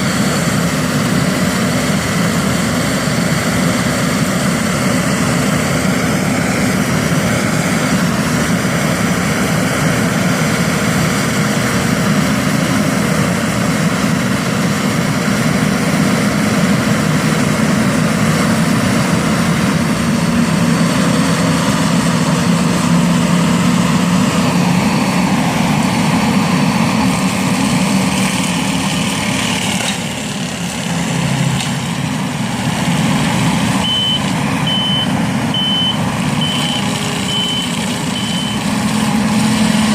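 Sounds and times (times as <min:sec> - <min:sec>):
skid steer engine running: 0:00.0 - 0:39.9
reversing beeper: 0:33.7 - 0:39.4.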